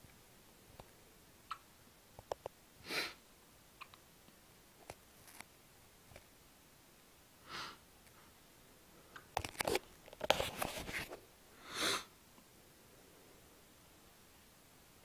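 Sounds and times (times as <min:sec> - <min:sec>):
clicks and rustling: 0:09.2 - 0:11.2.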